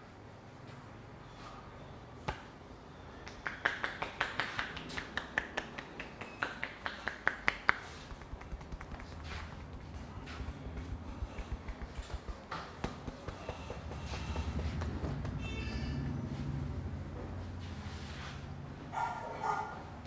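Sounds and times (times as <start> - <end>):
hands slapping a head: 2.2 - 2.6, 3.2 - 15.5.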